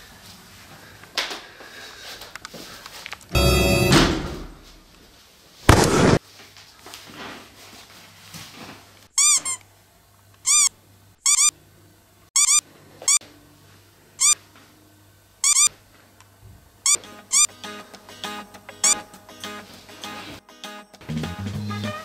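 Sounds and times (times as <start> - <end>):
high squeaks: 9.2 - 9.6, 10.5 - 11.5, 12.4 - 13.2, 14.2 - 14.4, 15.4 - 15.7, 16.9 - 17.5, 18.8 - 19.0.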